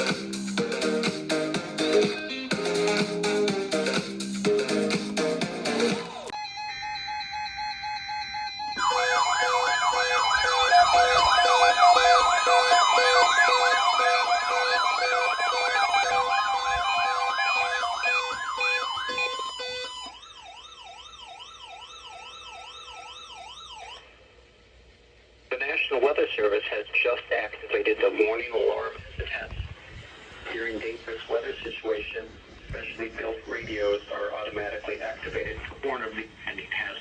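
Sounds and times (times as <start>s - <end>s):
weather radio warbling siren alarms: 6.2s - 24.2s
steady alarm tone: 6.3s - 24.2s.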